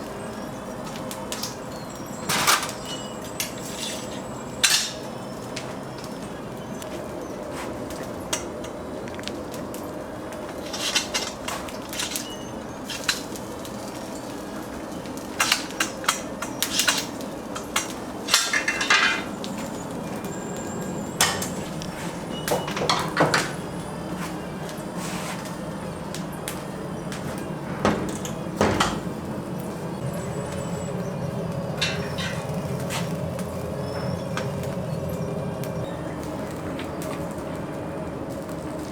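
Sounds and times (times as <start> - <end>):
steady background hum: 0.0 - 38.9
metal utensils and dishes clattering: 0.9 - 6.2, 10.5 - 24.4, 31.8 - 33.2.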